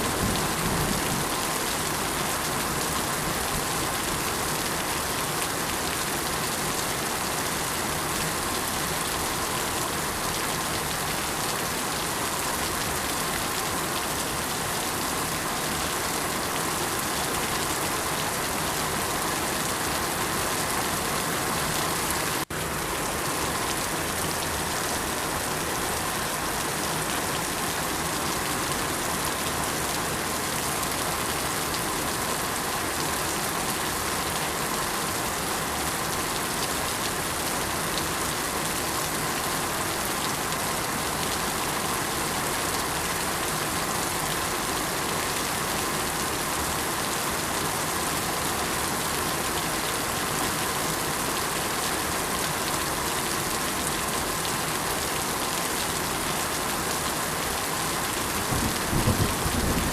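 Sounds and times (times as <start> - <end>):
rainfall hissing: 51.1 - 59.9.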